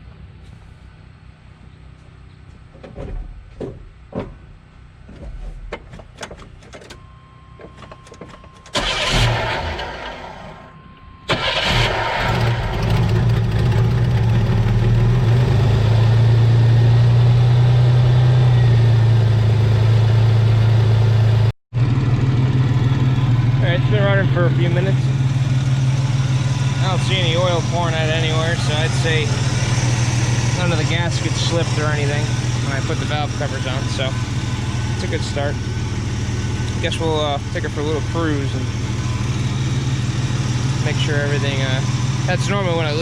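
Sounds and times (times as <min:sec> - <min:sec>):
engine cranking and idling: 0:07.6 - 0:16.5, 0:18.7 - 0:43.0.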